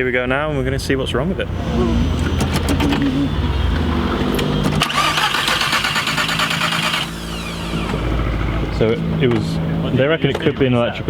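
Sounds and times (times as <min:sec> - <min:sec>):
car engine rumbling: 0:00.0 - 0:11.0
harsh whirring: 0:01.6 - 0:09.9.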